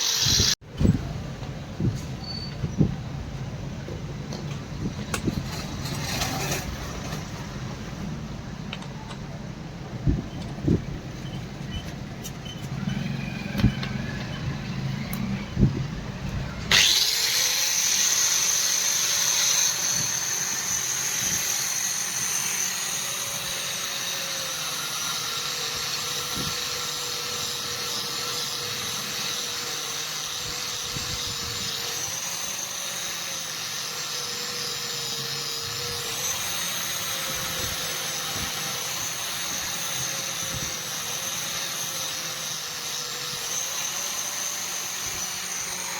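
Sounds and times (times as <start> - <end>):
electric power tool running: 0.0 - 0.6, 12.7 - 45.9.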